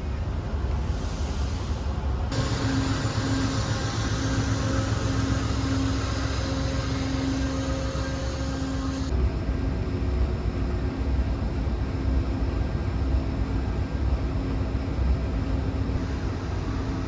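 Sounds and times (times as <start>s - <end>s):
train mechanical hum and rumble: 0.0s - 17.0s
low steady tone: 2.3s - 9.1s.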